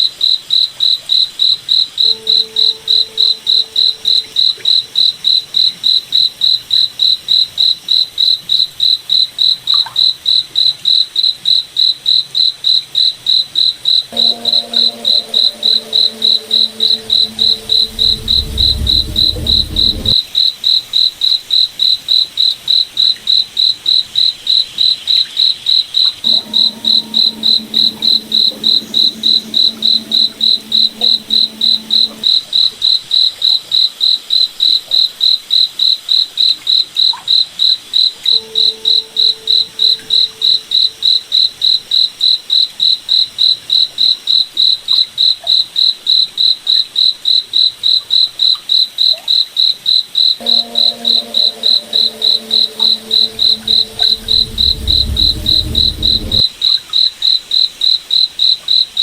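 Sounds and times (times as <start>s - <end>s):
crickets chirping: 13.9s - 20.3s, 26.2s - 32.4s, 48.7s - 56.5s
low humming tone: 14.2s - 20.2s, 26.2s - 32.4s, 50.4s - 56.5s
deep rumble: 16.1s - 20.2s, 52.4s - 56.5s.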